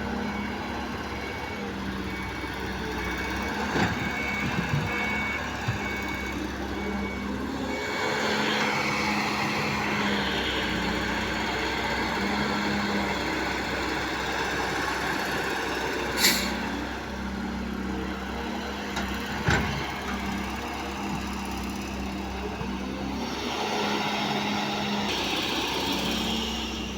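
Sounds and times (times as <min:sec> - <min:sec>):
reversing alarm beeping: 0:00.0 - 0:11.6
diesel machinery running: 0:00.0 - 0:26.9.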